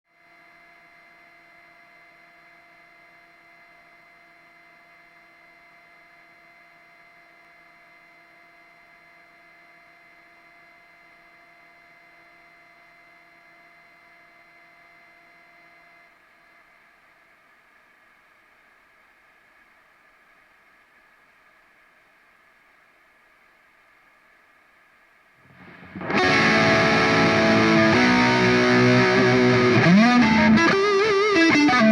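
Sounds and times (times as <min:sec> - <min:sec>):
high-pitched amplifier whine: 0:00.1 - 0:31.9
distorted electric guitar: 0:25.5 - 0:31.9.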